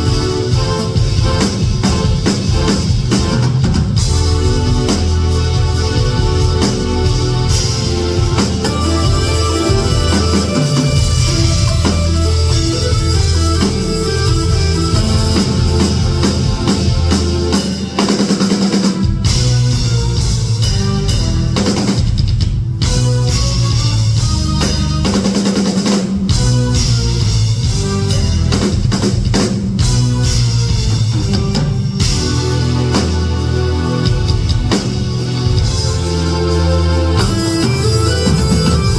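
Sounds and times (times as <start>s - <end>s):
electric guitar playing: 0.0s - 20.3s, 29.8s - 38.9s
drum kit with heavy bass drum: 0.0s - 38.9s.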